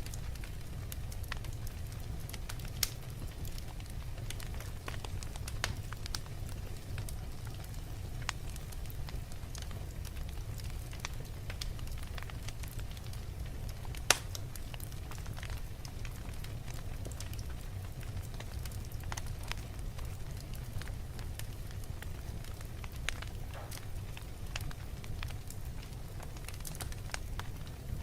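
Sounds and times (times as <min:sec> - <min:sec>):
wood fire crackling: 0:00.0 - 0:28.0
loud pop from fire: 0:14.0 - 0:14.4, 0:23.4 - 0:24.0.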